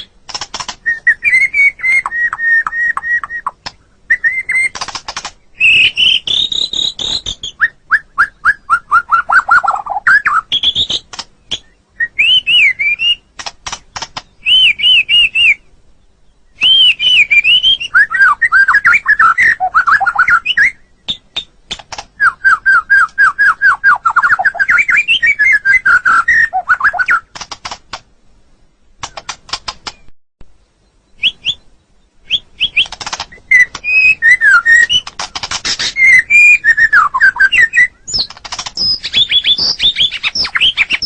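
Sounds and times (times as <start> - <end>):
bird clicking rattles: 0.3 - 0.8, 4.7 - 5.4, 13.4 - 14.3, 27.3 - 28.1, 29.0 - 30.0, 32.7 - 33.4, 34.9 - 36.0, 38.1 - 41.0
bird singing whistled notes: 0.8 - 4.8, 5.5 - 13.3, 14.3 - 21.6, 22.2 - 27.3, 30.8 - 41.0.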